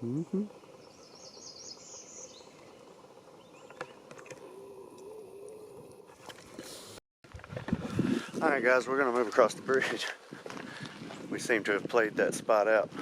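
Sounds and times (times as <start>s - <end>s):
small bird chirping: 0.0s - 2.8s.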